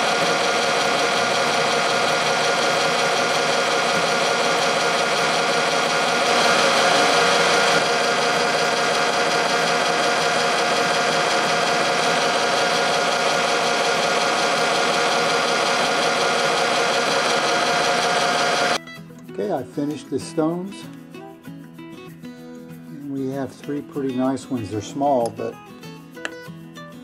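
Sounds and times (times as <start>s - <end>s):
faceting machine motor running: 0.0s - 18.8s.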